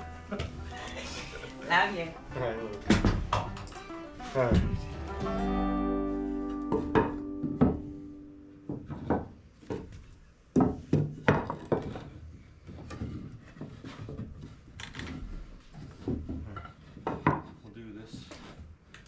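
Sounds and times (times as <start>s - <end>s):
acoustic guitar tune: 0.0s - 8.9s
wooden knocks and clatters: 2.8s - 4.9s, 8.6s - 19.0s.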